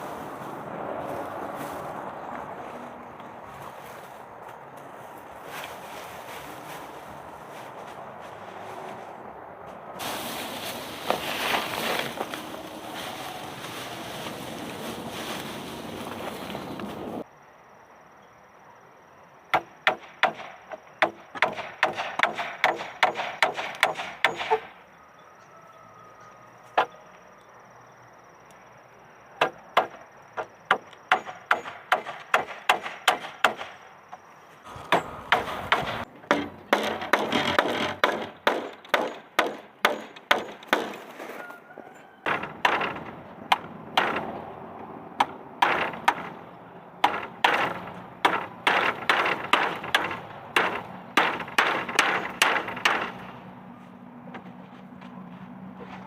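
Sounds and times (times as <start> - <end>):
tool striking wood: 19.5 - 24.7, 29.4 - 33.7, 34.9 - 41.0, 42.3 - 44.3, 45.2 - 46.4, 47.0 - 53.3.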